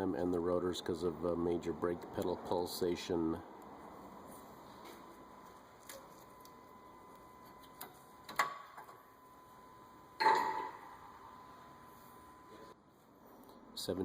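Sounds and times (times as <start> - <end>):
metallic clank ringing: 10.2 - 10.9.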